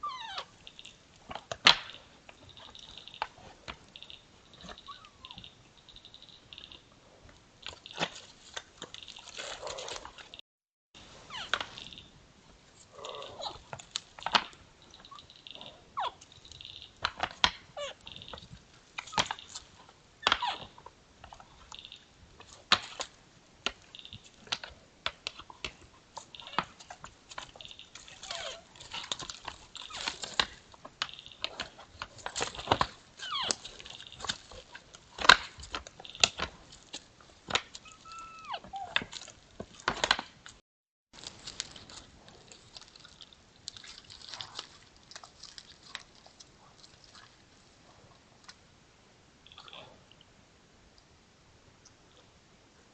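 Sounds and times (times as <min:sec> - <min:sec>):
deer squealing calls: 0:04.7 - 0:05.5, 0:15.0 - 0:16.8, 0:37.8 - 0:39.0.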